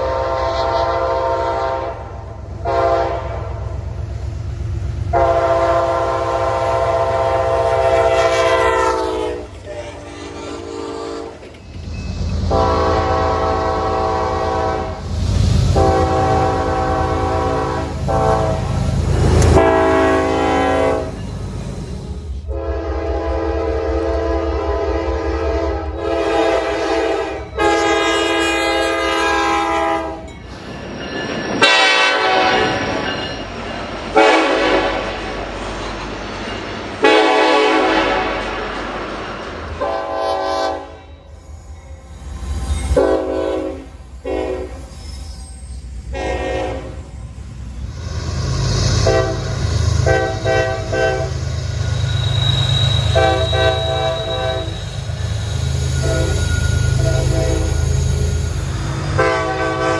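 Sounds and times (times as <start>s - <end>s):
train horn chord blasts: 0.0s - 3.6s, 5.1s - 11.4s, 12.5s - 15.0s, 15.7s - 21.2s, 22.5s - 30.3s, 31.6s - 32.8s, 34.2s - 35.3s, 37.0s - 38.8s, 39.8s - 41.2s, 43.0s - 44.8s, 46.1s - 47.1s, 48.8s - 51.5s, 53.1s - 54.9s, 56.0s - 57.9s, 59.1s - 59.9s
passing trains rumbling: 0.0s - 59.9s.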